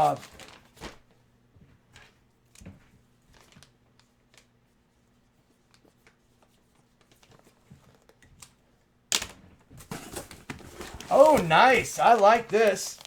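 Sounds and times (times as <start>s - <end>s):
packaging clicking and rustling: 0.0s - 1.0s, 9.1s - 13.0s.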